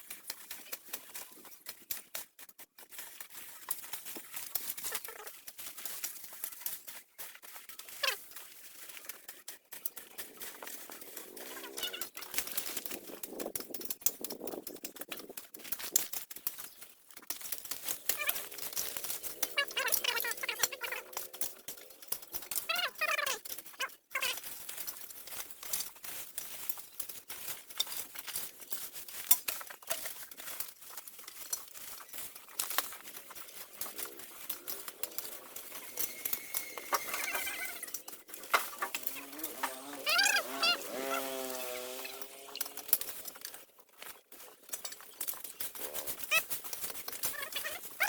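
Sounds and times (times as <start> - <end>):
brush rustling and scraping: 0.0 - 13.6, 14.2 - 48.0
wavering pitched calls: 35.0 - 42.6.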